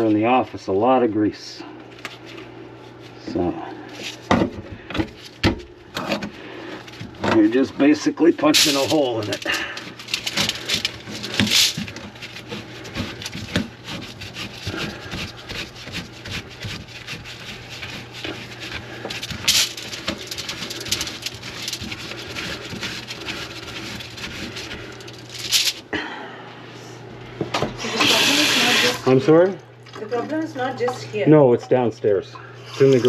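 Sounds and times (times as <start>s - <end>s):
motor hum: 3.2s - 33.0s
drain cable scraping and knocking: 4.3s - 25.8s.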